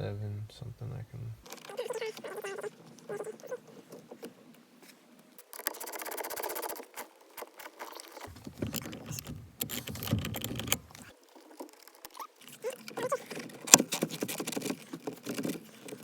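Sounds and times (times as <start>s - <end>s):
metal tool clatter and knocks: 8.3s - 11.1s
ratchet wrench clicking: 8.3s - 11.1s.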